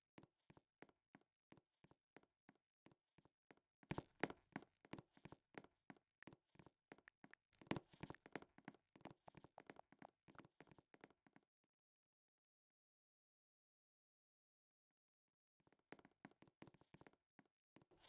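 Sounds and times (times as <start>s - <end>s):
faint clicks and taps: 0.2s - 11.5s, 15.7s - 18.0s.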